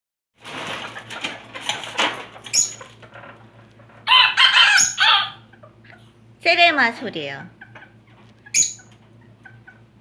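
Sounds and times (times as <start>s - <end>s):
rustling and scratching: 0.4s - 4.1s
chicken calling loudly: 4.0s - 5.8s.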